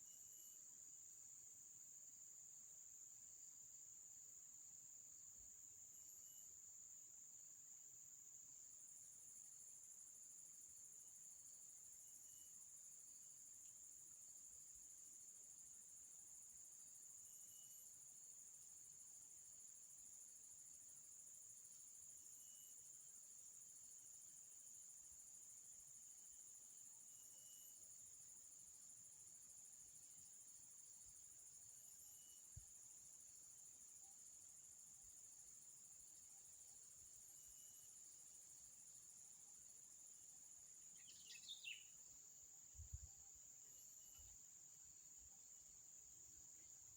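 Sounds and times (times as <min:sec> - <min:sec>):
faint chirp: 0:05.9 - 0:06.6, 0:16.7 - 0:18.1, 0:22.3 - 0:23.1, 0:27.0 - 0:28.1, 0:30.5 - 0:45.4
insect trilling: 0:40.9 - 0:42.0.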